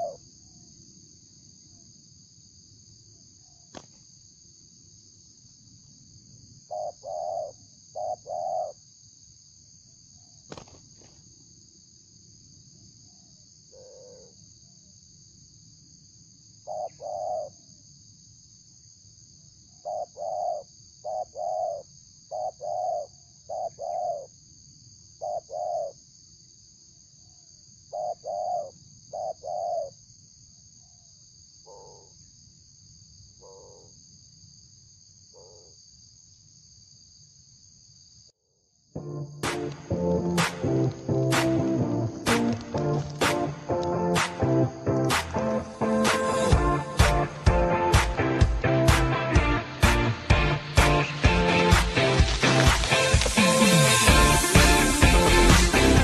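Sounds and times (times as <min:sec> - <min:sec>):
dove cooing: 0:00.0 - 0:00.2, 0:06.7 - 0:08.8, 0:16.7 - 0:17.5, 0:19.8 - 0:24.3, 0:25.2 - 0:26.0, 0:27.9 - 0:29.9
high drone of crickets: 0:00.0 - 0:56.0.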